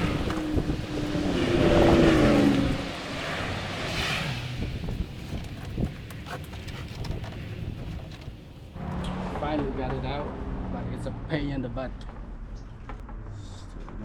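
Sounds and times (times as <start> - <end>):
fabric board scraping: 0.0 - 8.5.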